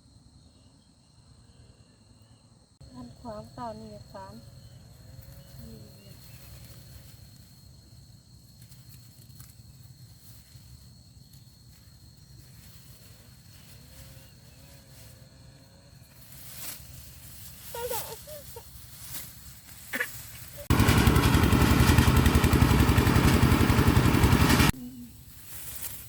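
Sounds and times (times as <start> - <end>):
rustling noise: 5.4 - 15.2, 16.0 - 20.7, 24.7 - 26.0.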